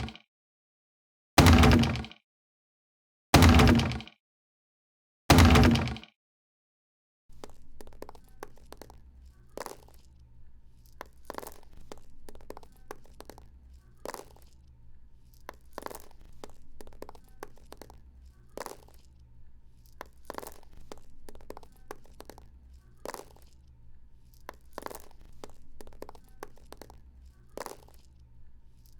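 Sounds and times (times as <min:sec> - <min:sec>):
faint low hum: 0:07.3 - 0:28.9
small stones clattering: 0:07.4 - 0:10.1, 0:10.7 - 0:28.9.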